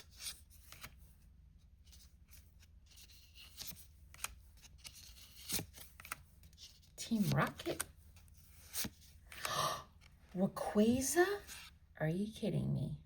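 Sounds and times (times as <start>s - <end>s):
cards swishing and tapping: 0.0s - 1.1s, 1.8s - 10.1s.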